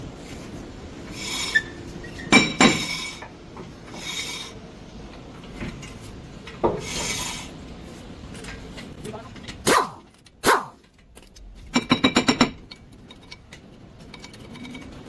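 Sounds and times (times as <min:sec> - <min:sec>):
sharp metal clanks: 0:09.7 - 0:10.8.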